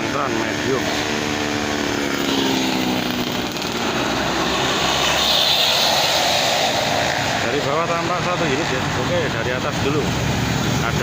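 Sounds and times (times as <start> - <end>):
bus engine passing: 0.0 - 11.0
tyre and road noise: 0.0 - 11.0.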